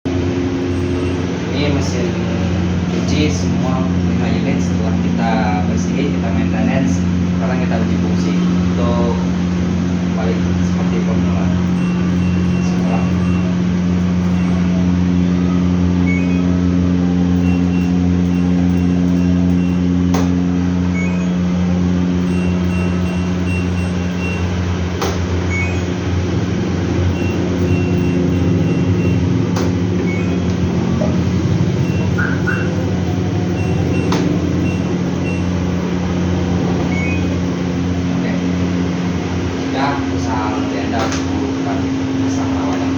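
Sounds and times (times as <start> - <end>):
higher motor hum: 0.0 - 42.9
washing machine motor hum: 0.0 - 42.9
short high beeps: 11.5 - 24.6, 25.4 - 26.0, 26.9 - 35.8, 36.4 - 37.5.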